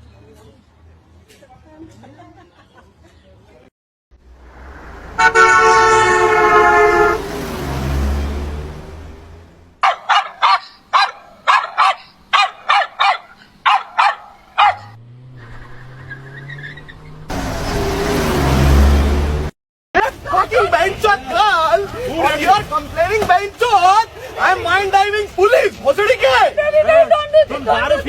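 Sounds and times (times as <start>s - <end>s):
horn steady note: 5.0s - 8.1s
dog barking: 9.8s - 15.0s.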